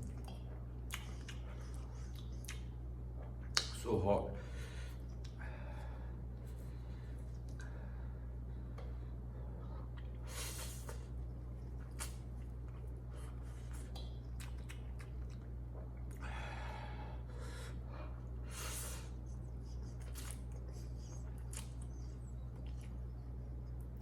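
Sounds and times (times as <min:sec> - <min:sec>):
chewing with wet mouth clicks: 0:00.0 - 0:03.8, 0:05.1 - 0:05.4, 0:11.6 - 0:16.2, 0:19.3 - 0:24.0
steady low hum: 0:00.0 - 0:24.0
noisy slurps: 0:18.6 - 0:22.0.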